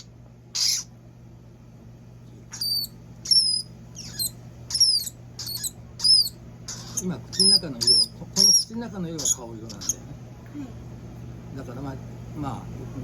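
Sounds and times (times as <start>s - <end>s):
ground squirrel squeaking: 0.0s - 0.9s, 2.5s - 10.1s.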